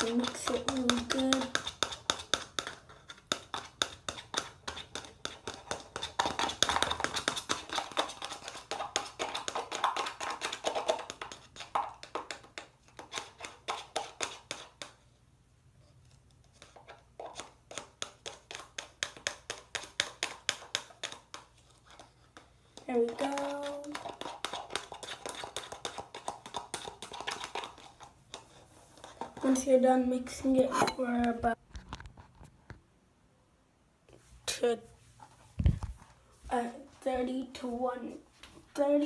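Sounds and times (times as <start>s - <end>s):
plastic knife stirring in container: 0.0s - 15.0s, 15.9s - 31.6s.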